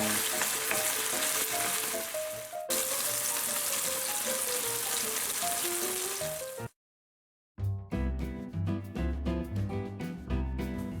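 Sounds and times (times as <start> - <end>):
patties sizzling in a pan: 0.0 - 6.7.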